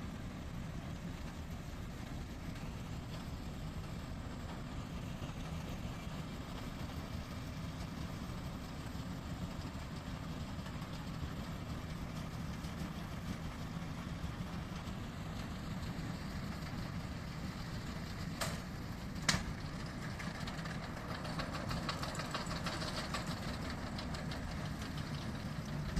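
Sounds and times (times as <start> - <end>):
tractor engine running: 0.0 - 25.9
fast mechanical rattle: 18.3 - 25.9.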